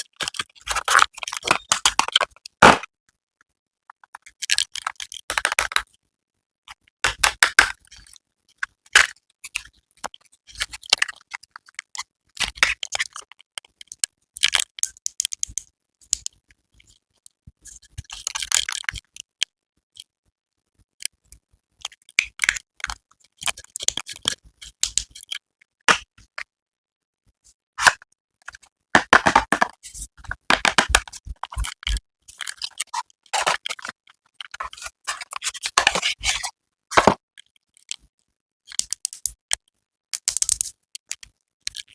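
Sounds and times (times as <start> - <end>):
plastic and cardboard packaging crinkling: 29.0 - 31.8, 32.4 - 37.2.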